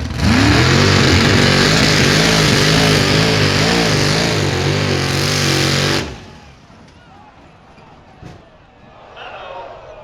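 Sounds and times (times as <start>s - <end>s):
engine running at full throttle: 0.0s - 6.5s.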